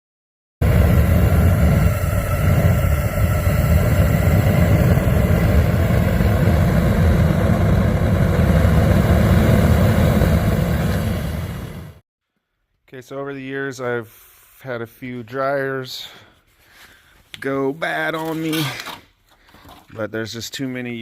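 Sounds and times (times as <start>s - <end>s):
gas forge burner rushing: 0.6s - 12.0s.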